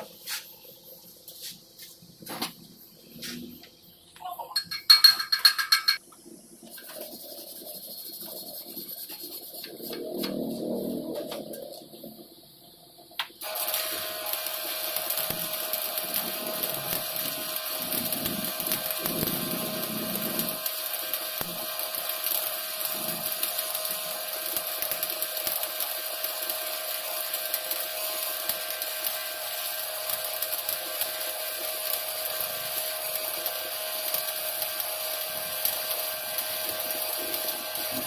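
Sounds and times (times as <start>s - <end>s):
welding arc crackling: 5.4s - 12.2s, 13.2s - 38.0s.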